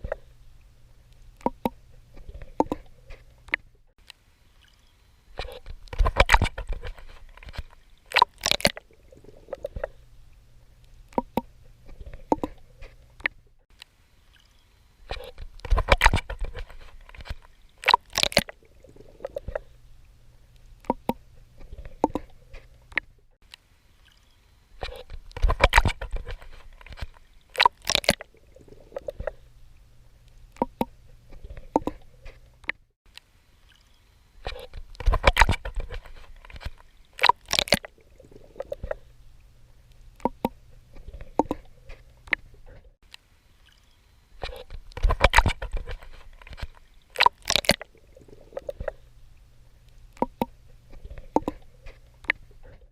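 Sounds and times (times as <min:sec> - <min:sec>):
water gurgling: 0:00.0 - 0:03.6, 0:04.4 - 0:13.3, 0:15.1 - 0:23.0, 0:24.8 - 0:32.4, 0:33.4 - 0:42.8, 0:43.5 - 0:52.9
low steady hum: 0:00.0 - 0:52.9
swimming stroke splashes: 0:24.8 - 0:29.4, 0:34.4 - 0:39.1, 0:44.4 - 0:49.0.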